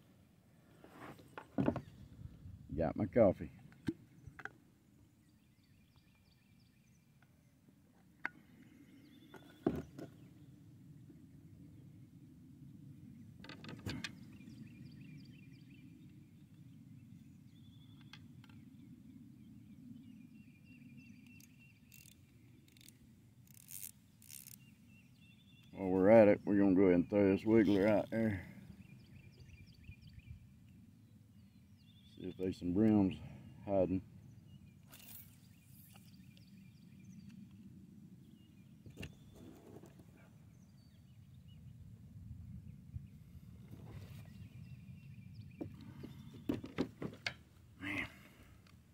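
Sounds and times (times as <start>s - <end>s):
faint distant birds calling: 0.0s - 48.9s
faint bird chirps: 13.9s - 22.9s.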